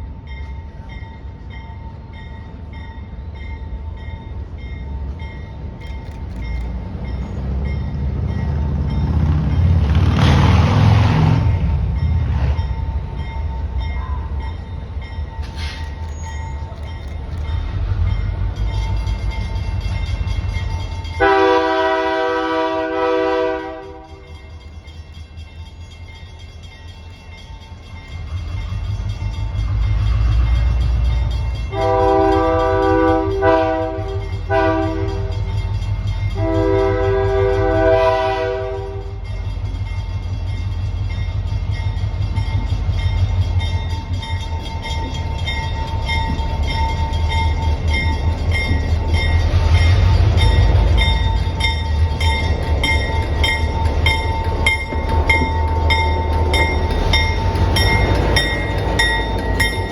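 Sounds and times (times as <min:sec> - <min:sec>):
locomotive rumbling past: 0:00.0 - 0:59.9
train horn blasts: 0:21.2 - 0:24.3, 0:31.7 - 0:35.6, 0:36.3 - 0:39.3.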